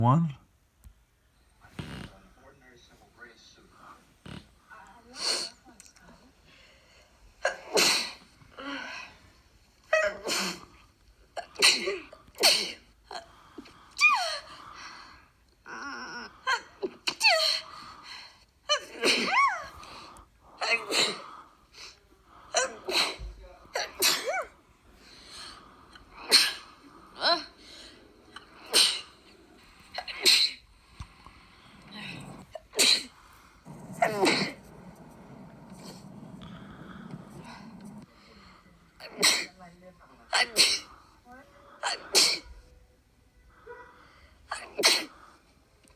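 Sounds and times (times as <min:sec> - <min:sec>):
person sneezing: 0:41.8 - 0:42.6, 0:44.5 - 0:45.2.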